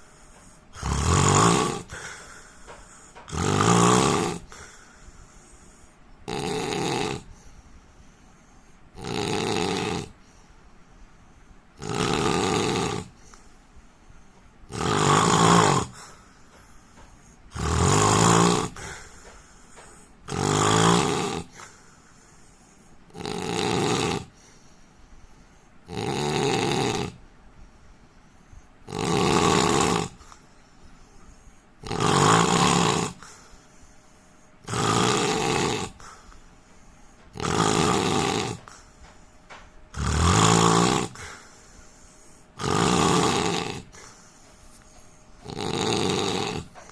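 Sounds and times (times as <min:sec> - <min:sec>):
man snoring: 0:00.0 - 0:04.9, 0:06.3 - 0:07.5, 0:09.0 - 0:10.2, 0:11.8 - 0:13.2, 0:14.7 - 0:16.2, 0:17.0 - 0:21.8, 0:23.1 - 0:24.4, 0:25.8 - 0:27.2, 0:28.8 - 0:30.4, 0:31.8 - 0:33.4, 0:34.6 - 0:36.3, 0:37.3 - 0:38.9, 0:39.9 - 0:41.6, 0:42.2 - 0:44.3, 0:45.4 - 0:46.9.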